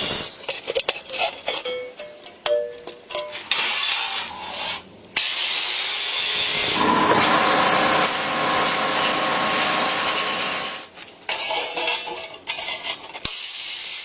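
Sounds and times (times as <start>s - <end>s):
power tool abrasive grinding: 6.2s - 10.8s.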